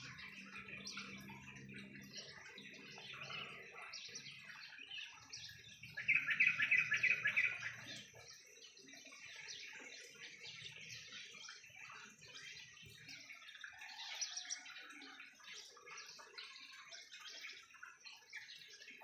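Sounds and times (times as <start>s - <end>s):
small birds chirping: 0.0s - 19.0s.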